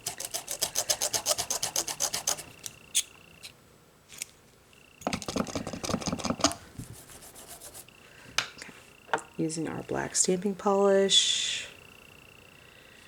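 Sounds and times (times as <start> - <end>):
faint high-pitched whine: 7.4 - 13.0.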